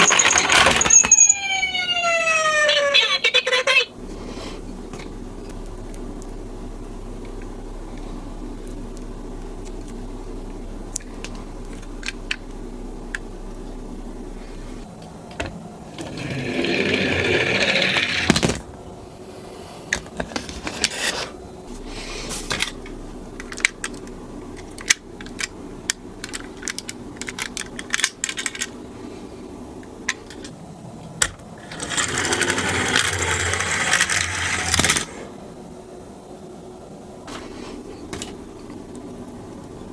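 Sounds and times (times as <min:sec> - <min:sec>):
toy cars rolling down slope: 0:00.0 - 0:03.9, 0:15.9 - 0:18.7, 0:31.6 - 0:35.3.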